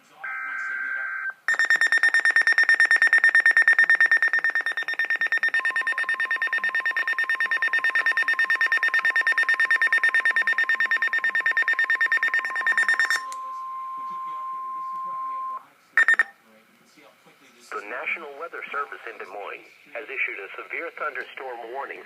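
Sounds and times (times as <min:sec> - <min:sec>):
rapidly pulsing alarm beep: 0:00.2 - 0:16.3.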